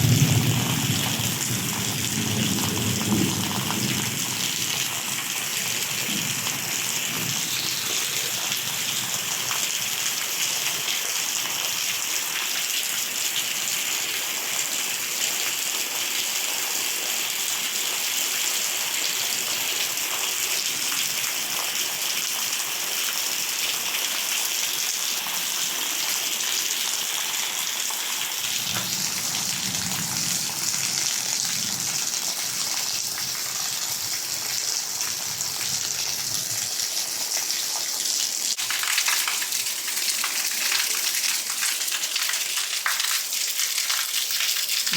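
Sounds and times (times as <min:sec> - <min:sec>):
heavy rain hissing: 0:00.0 - 0:10.0, 0:28.2 - 0:37.3
running water splashing: 0:04.9 - 0:11.4, 0:36.8 - 0:44.9.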